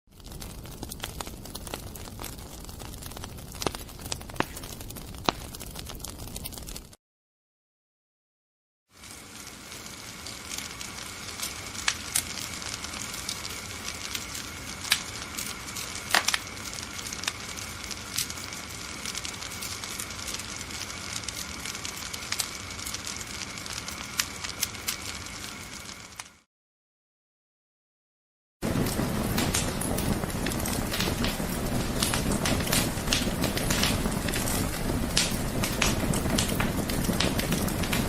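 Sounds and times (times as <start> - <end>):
fire crackling and hissing: 0.1 - 7.0, 8.9 - 26.5, 28.6 - 38.0.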